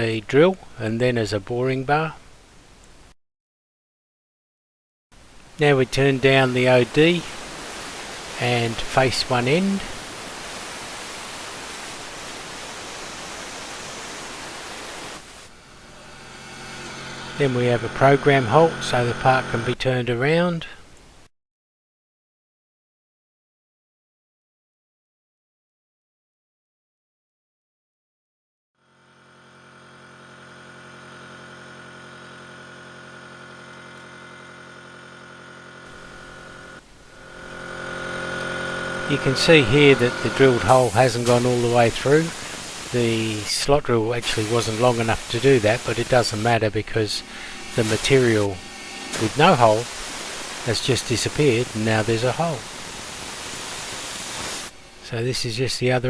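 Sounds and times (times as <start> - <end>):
lathe running with steady hiss: 5.6 - 19.8, 29.0 - 55.4.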